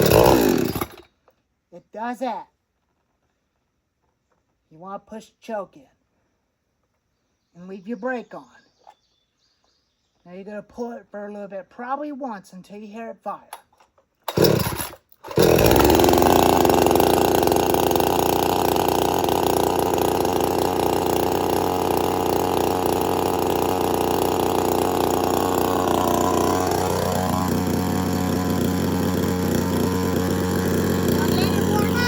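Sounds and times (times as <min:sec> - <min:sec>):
chainsaw idling: 0:00.0 - 0:01.1, 0:14.3 - 0:32.0
starter cord pull: 0:13.5 - 0:16.9.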